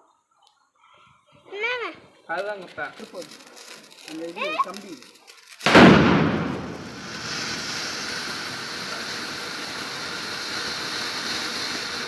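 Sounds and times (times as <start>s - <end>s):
firework hissing: 1.5s - 12.0s
firecracker bang: 5.6s - 12.0s.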